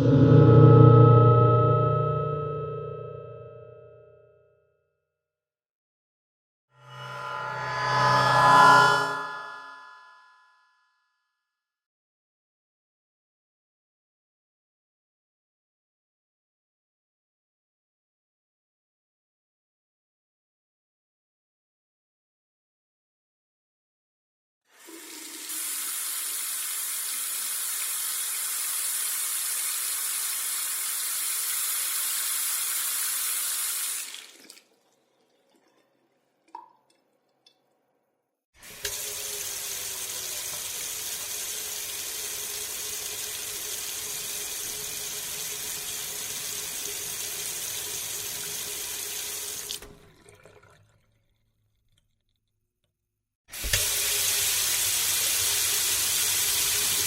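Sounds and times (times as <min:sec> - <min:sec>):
water running from a tap: 0:24.7 - 0:36.9, 0:38.6 - 0:51.3, 0:53.6 - 0:57.0.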